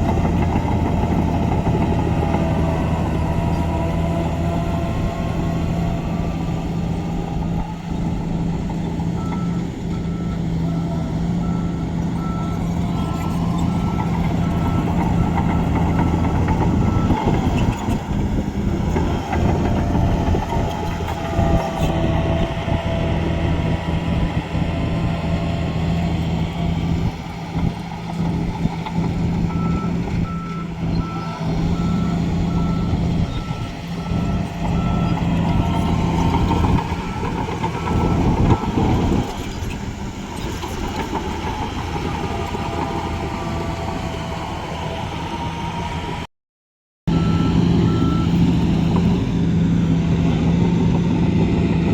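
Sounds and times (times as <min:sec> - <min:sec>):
heavy diesel machinery running: 0:00.0 - 0:46.3, 0:47.1 - 0:51.9
reversing alarm beeping: 0:47.1 - 0:48.5.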